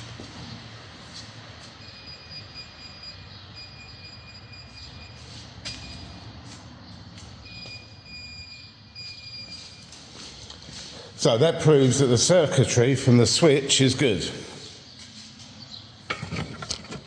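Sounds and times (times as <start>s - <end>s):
high-pitched parking sensor beep: 1.8s - 6.3s, 7.4s - 10.4s.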